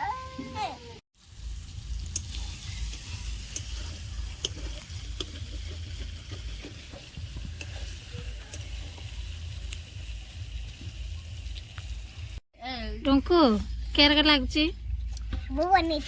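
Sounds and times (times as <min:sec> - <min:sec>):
chicken sizzling in a pan: 0:01.2 - 0:12.4
ladle clicking against pan: 0:03.5 - 0:07.9.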